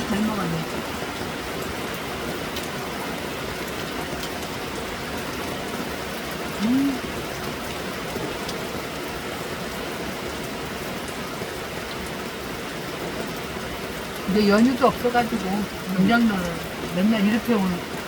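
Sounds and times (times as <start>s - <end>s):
rain falling: 0.0s - 18.0s
short voiced hum: 6.6s - 7.1s.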